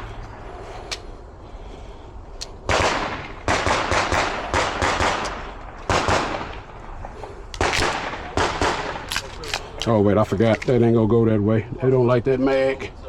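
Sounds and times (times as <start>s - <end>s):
rapid pistol fire: 2.7s - 6.8s, 7.6s - 9.5s.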